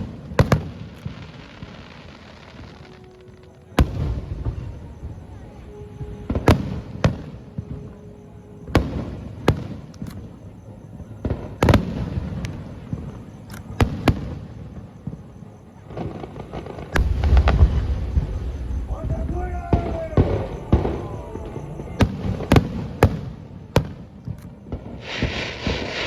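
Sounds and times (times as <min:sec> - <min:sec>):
distant firework booms: 0:15.9 - 0:26.0
low rumbling echo: 0:17.0 - 0:22.9.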